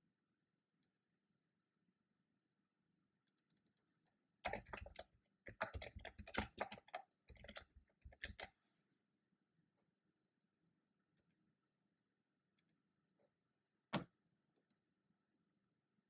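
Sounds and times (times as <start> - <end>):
typing on computer keyboard: 4.4 - 8.6.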